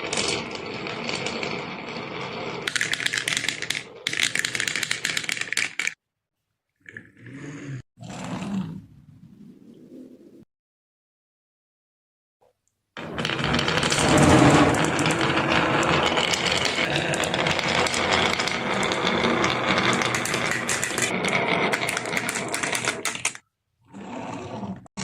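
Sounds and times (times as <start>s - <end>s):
marbles rattling down wooden run: 0.0s - 6.0s, 13.0s - 23.4s.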